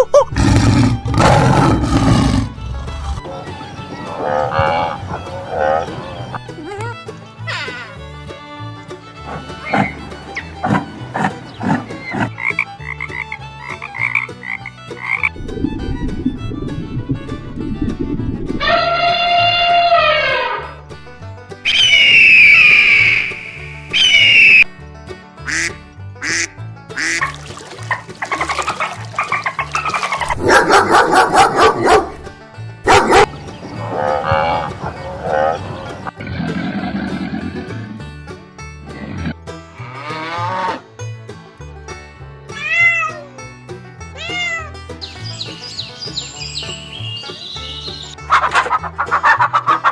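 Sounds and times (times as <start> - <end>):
background music: 0.0 - 49.9
low rough rumbling: 0.5 - 5.3, 15.3 - 19.8
frog croaking: 11.2 - 15.4
dog barking: 30.4 - 32.2, 32.9 - 33.3.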